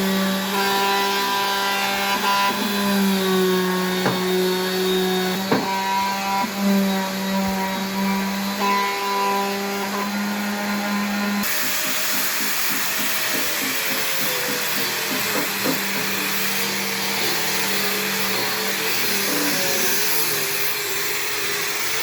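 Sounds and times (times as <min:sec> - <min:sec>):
electric power tool motor running: 0:11.1 - 0:22.0.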